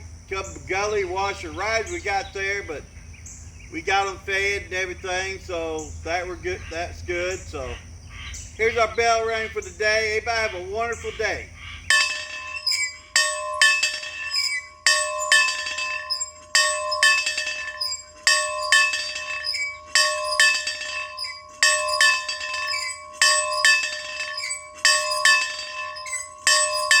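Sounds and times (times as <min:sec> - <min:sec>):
bell ringing: 0:11.9 - 0:27.0.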